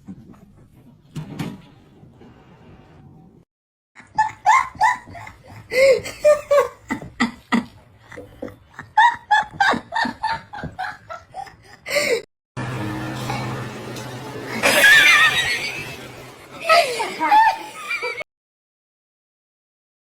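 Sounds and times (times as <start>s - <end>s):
person laughing hard: 14.6s - 16.0s.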